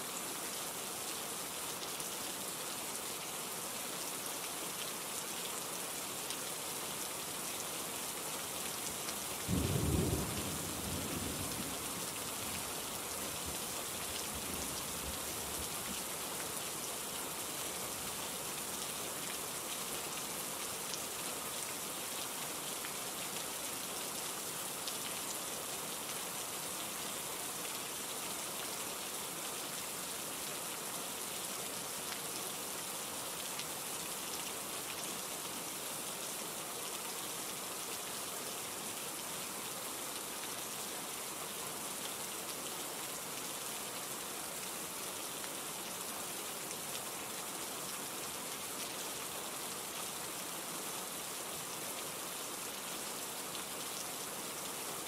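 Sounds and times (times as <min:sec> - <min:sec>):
steady rain falling: 0:00.0 - 0:55.0
low rumble of thunder: 0:09.5 - 0:12.1.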